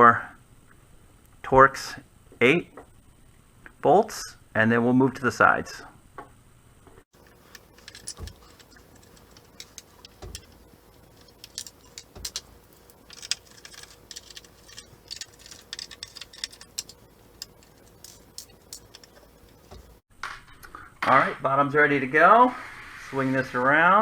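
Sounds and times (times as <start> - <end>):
screwdriver clicks and scrapes: 7.2 - 20.0
soft knocks of parts handled: 7.2 - 20.0.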